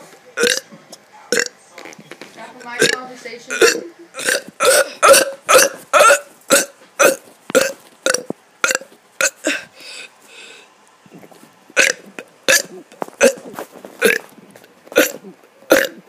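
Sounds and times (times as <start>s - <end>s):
person burping: 0.4s - 0.7s, 1.3s - 1.6s, 2.8s - 9.7s, 11.8s - 14.3s, 14.9s - 16.0s.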